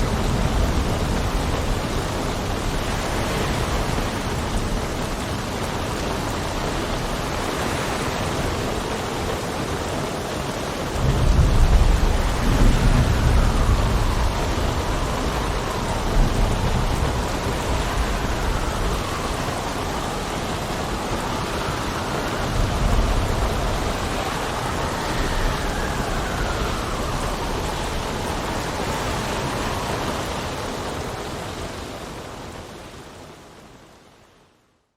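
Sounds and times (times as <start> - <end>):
rain: 0.0 - 34.9
wind: 0.0 - 34.9
rolls of thunder: 11.0 - 29.9.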